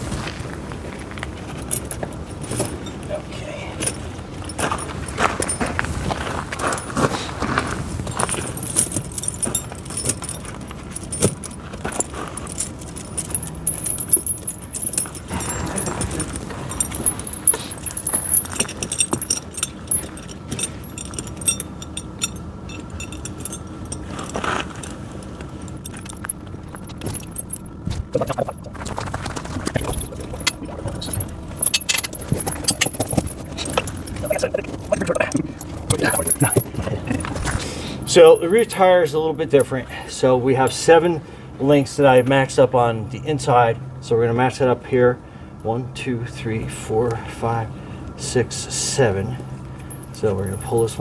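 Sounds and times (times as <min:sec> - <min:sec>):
metal chain links clinking: 0:01.5 - 0:40.0, 0:48.8 - 0:51.0.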